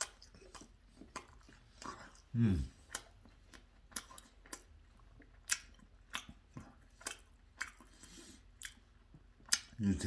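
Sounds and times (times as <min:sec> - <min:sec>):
wet mouth clicks: 0:00.0 - 0:04.7, 0:05.4 - 0:07.9, 0:09.5 - 0:09.8
person chewing: 0:00.0 - 0:10.0.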